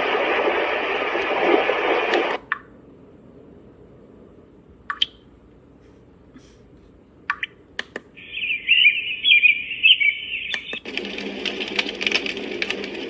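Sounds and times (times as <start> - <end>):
recorded bird chirping from speaker: 7.4 - 10.9.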